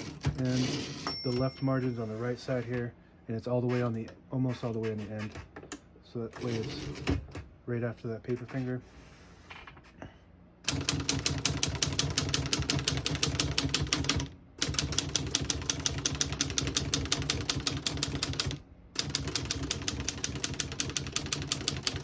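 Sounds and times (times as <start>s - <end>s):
typewriter keys clacking: 10.7s - 22.0s.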